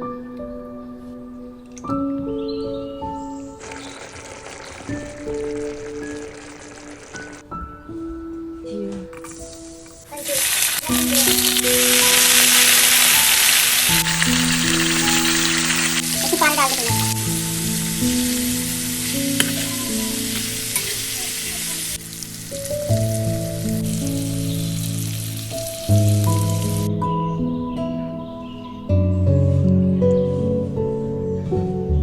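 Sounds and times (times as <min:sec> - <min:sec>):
background music sustained notes: 0:00.0 - 0:32.0
food sizzling in a pan: 0:03.6 - 0:07.4, 0:09.4 - 0:26.9.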